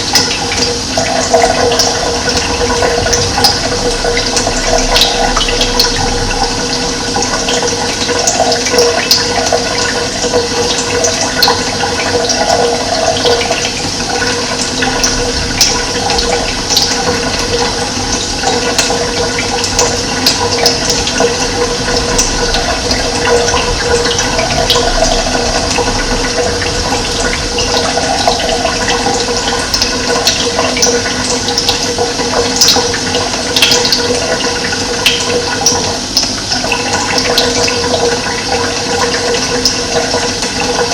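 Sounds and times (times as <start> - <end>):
running water: 0.0 - 40.9.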